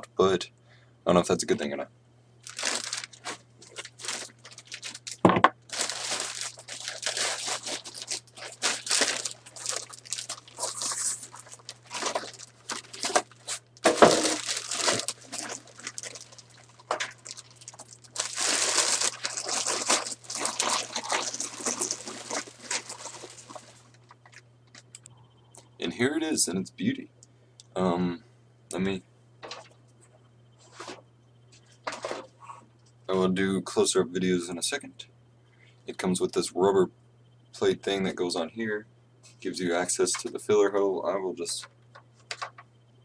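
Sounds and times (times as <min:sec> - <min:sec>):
low steady hum: 0:00.0 - 0:43.0
plastic wrapping crinkling: 0:02.4 - 0:25.0.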